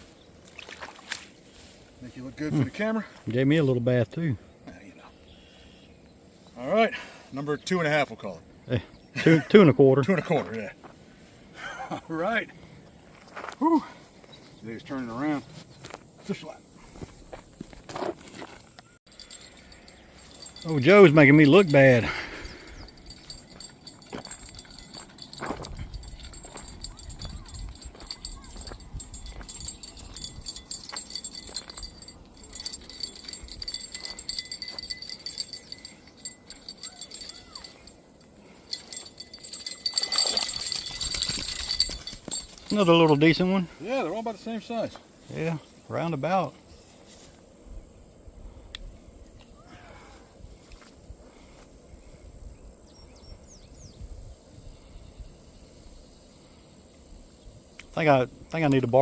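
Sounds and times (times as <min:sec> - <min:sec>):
insects buzzing: 0:14.0 - 0:49.6, 0:50.3 - 0:59.0.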